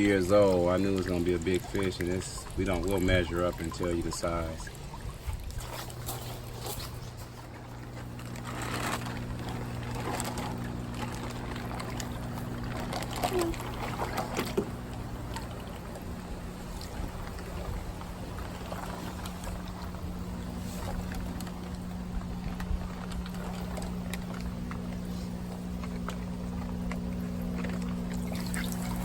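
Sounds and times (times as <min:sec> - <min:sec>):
electric pump hum: 0:00.0 - 0:29.0
water trickling and splashing: 0:00.0 - 0:29.0.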